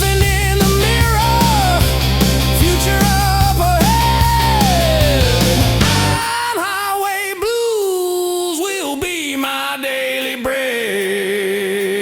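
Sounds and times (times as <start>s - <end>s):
rock music with heavy guitars: 0.0s - 6.7s
gliding guitar lead line: 0.6s - 6.3s.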